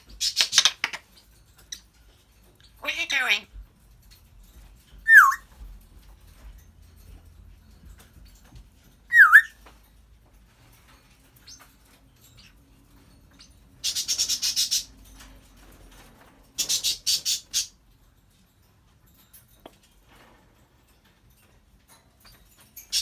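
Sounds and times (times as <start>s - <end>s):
parrot whistling: 5.1s - 5.4s, 9.1s - 9.6s.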